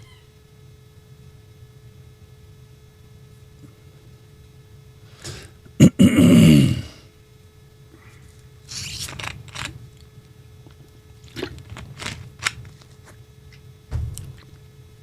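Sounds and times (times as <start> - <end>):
low steady hum: 0.0 - 15.0
short clicks and rustles: 8.7 - 9.8
dull thump: 13.9 - 14.4.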